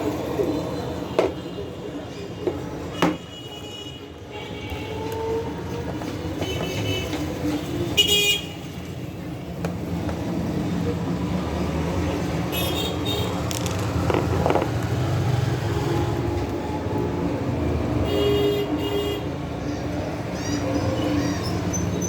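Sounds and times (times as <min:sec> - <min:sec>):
road traffic: 0:00.0 - 0:22.0
vehicle horns honking: 0:12.5 - 0:13.4.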